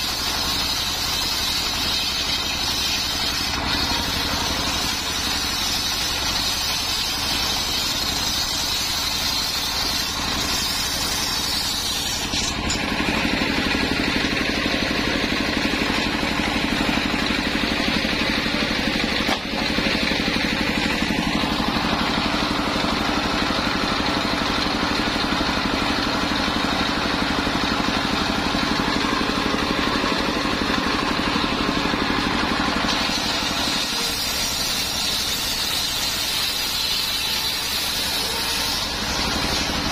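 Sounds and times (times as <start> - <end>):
engine driving circular saw: 0.0 - 39.9.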